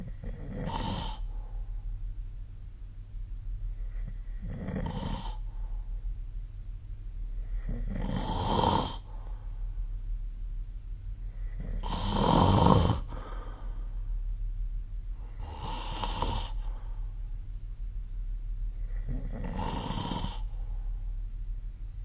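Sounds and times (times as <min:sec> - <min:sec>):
person snoring: 0:00.0 - 0:01.3, 0:03.9 - 0:05.5, 0:07.5 - 0:09.2, 0:11.4 - 0:13.7, 0:15.2 - 0:16.8, 0:18.8 - 0:20.6.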